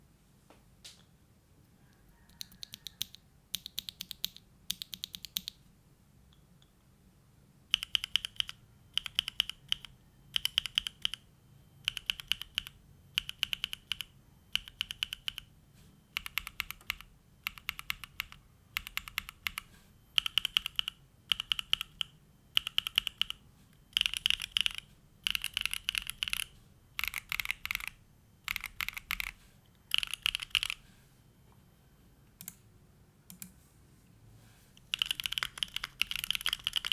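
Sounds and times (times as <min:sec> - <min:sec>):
mechanical keyboard typing: 0:02.3 - 0:05.6, 0:07.7 - 0:11.2, 0:11.8 - 0:15.5, 0:16.1 - 0:30.8, 0:34.8 - 0:36.9.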